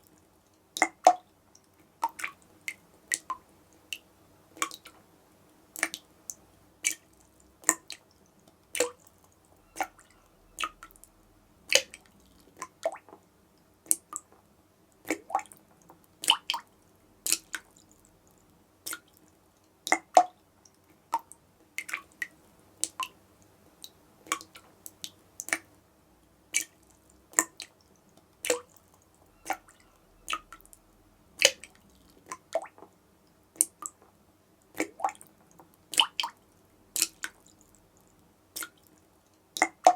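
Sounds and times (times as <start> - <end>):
water dripping from a tap: 0.8 - 5.0, 5.8 - 11.1, 11.7 - 14.4, 15.0 - 25.7, 26.6 - 30.8, 31.4 - 33.0, 33.6 - 39.9.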